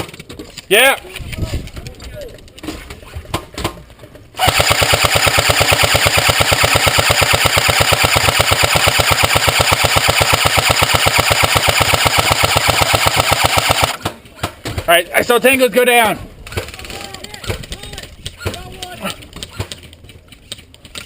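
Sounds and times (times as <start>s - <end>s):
airsoft gun full-auto burst: 4.4s - 14.0s.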